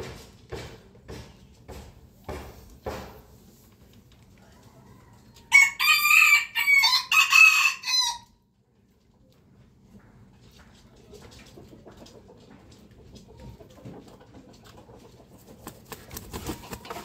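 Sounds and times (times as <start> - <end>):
rooster crowing: 4.4 - 8.3.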